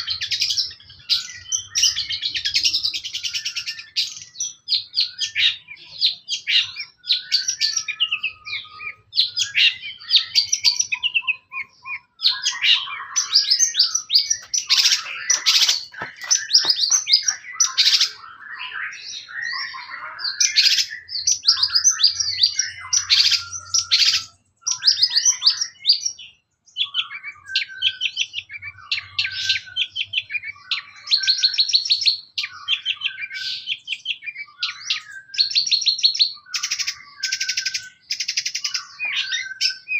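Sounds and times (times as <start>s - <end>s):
shrike singing: 0.0s - 25.9s.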